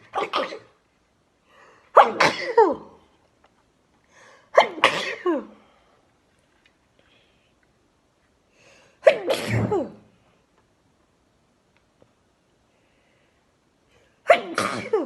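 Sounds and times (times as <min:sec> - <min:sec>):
person sneezing: 0:00.0 - 0:00.8, 0:01.9 - 0:03.0, 0:04.5 - 0:05.7, 0:09.0 - 0:10.1, 0:14.2 - 0:15.0.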